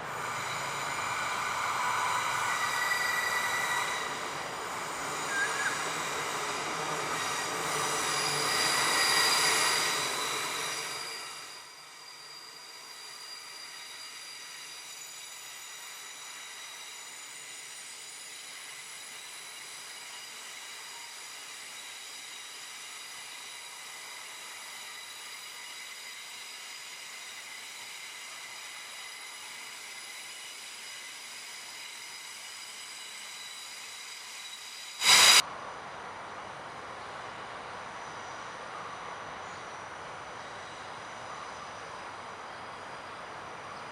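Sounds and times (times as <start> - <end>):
high ringing tones from train: 0.0 - 35.4, 37.9 - 43.9
steady hiss: 0.0 - 43.9
train: 0.0 - 43.9
short loud burst: 35.0 - 35.4.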